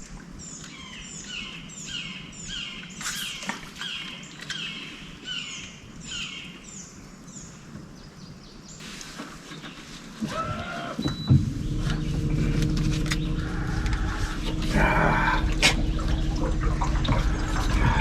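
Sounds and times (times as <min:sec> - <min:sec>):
bird calling with high falling notes: 0:10.3 - 0:18.0.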